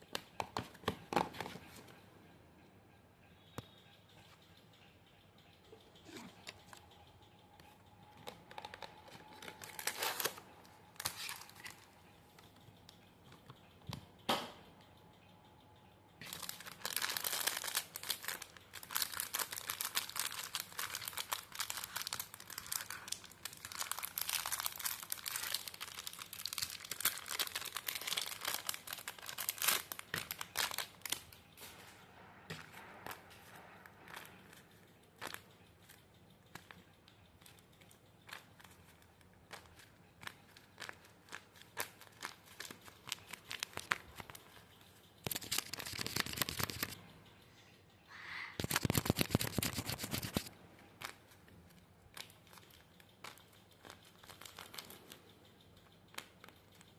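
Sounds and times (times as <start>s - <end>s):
paper crinkling and rustling: 8.3s - 10.4s, 16.2s - 31.9s, 39.5s - 44.5s, 45.2s - 47.0s, 48.6s - 51.4s.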